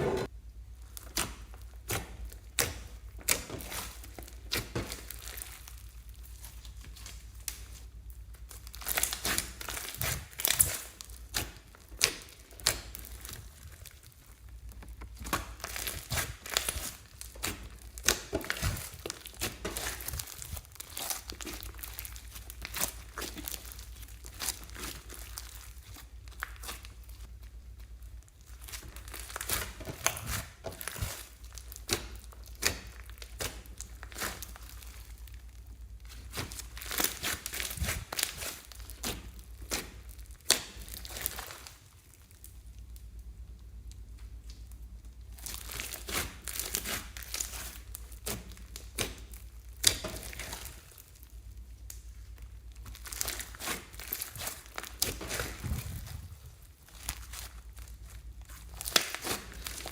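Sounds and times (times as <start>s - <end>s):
slime and plastic bags squeezed: 0.0s - 59.9s.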